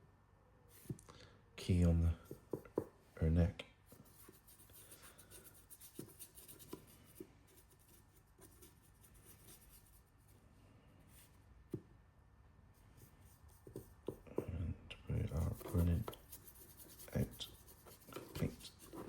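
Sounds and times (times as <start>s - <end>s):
paintbrush scratching: 3.9s - 10.3s, 12.8s - 14.2s, 15.2s - 19.0s.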